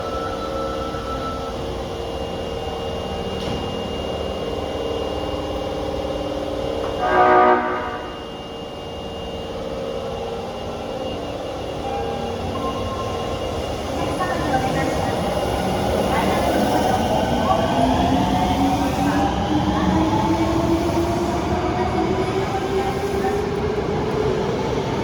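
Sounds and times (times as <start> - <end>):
subway train running: 0.0 - 25.0
train horn blast: 6.8 - 8.3.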